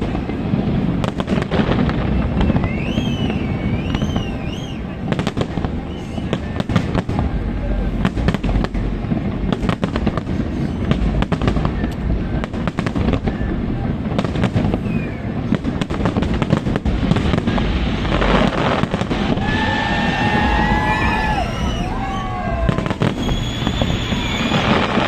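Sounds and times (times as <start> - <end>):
fireworks bangs and pops: 0.0 - 25.0
fireworks crackling: 0.0 - 25.0.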